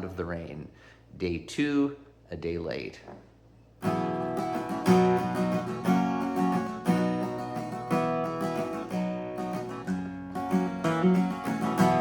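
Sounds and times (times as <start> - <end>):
acoustic guitar strumming: 3.8 - 12.0.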